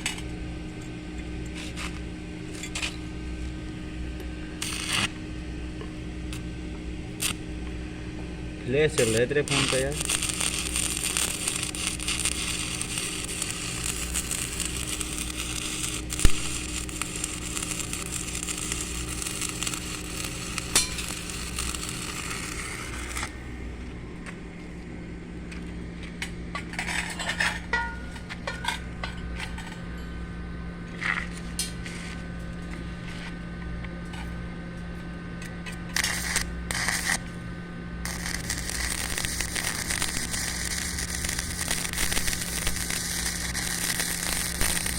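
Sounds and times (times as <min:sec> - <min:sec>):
steady low hum: 0:00.0 - 0:44.9
arc welding crackling hiss: 0:01.5 - 0:02.1, 0:04.5 - 0:05.3, 0:06.3 - 0:07.7, 0:08.6 - 0:23.4, 0:35.9 - 0:37.3, 0:38.0 - 0:44.9.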